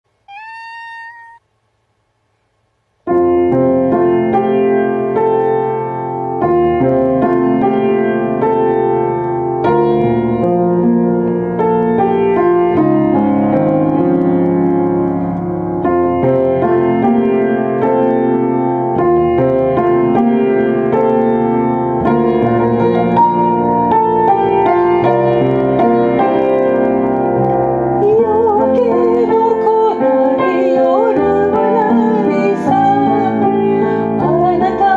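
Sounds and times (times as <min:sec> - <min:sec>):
short high tone: 0:00.3 - 0:01.4
solo piano ballad: 0:03.0 - 0:34.9
person singing: 0:28.0 - 0:34.9.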